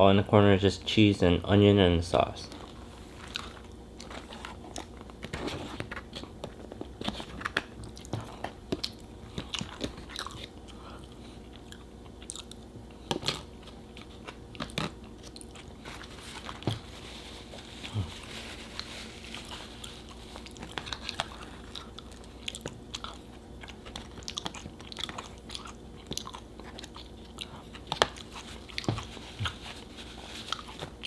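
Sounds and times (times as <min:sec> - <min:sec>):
person chewing food: 0:02.5 - 0:31.0.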